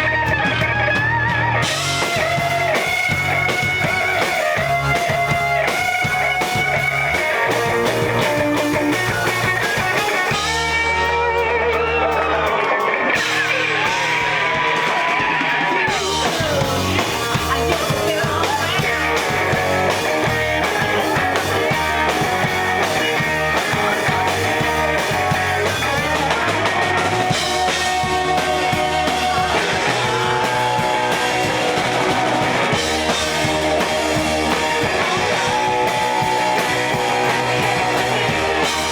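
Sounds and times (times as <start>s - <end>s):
bent electric guitar notes: 0.0s - 38.9s
rock band playing live: 0.0s - 38.9s.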